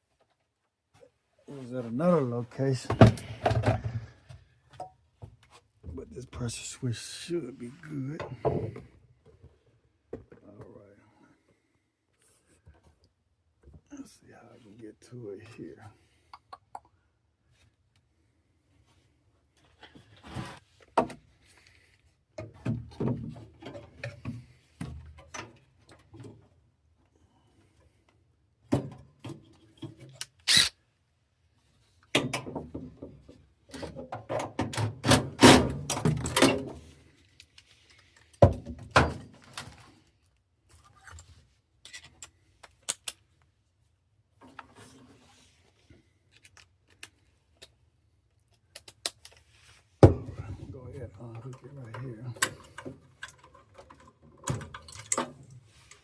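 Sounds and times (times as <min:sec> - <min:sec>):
metal parts thunking and knocking: 0:34.2 - 0:36.8.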